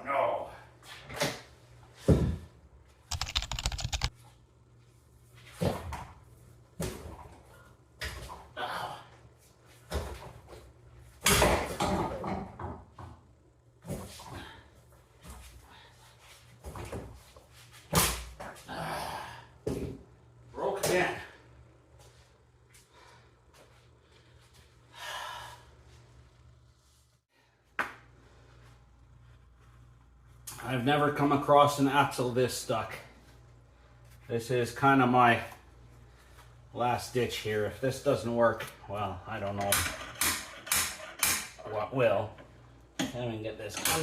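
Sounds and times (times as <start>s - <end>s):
low steady hum: 3.9s - 44.0s
person sighing: 18.7s - 19.5s.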